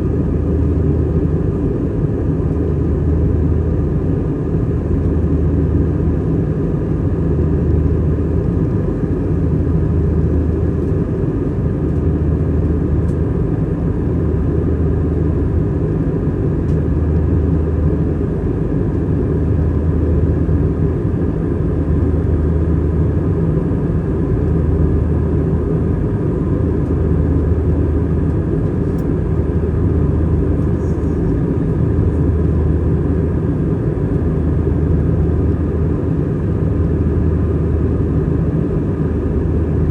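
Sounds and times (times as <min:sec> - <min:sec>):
aircraft cabin engine drone: 0:00.0 - 0:39.9.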